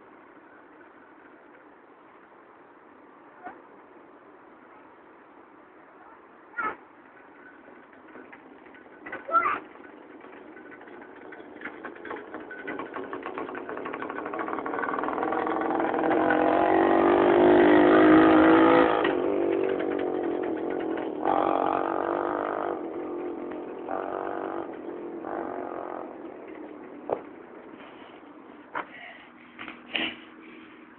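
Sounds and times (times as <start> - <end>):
moped engine revving: 8.0 - 28.7.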